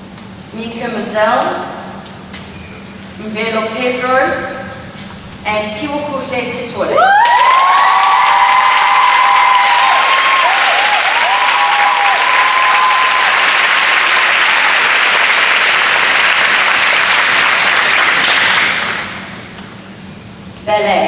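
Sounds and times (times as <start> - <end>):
high cheering whoops: 7.0 - 15.2
audience applauding: 7.1 - 19.7.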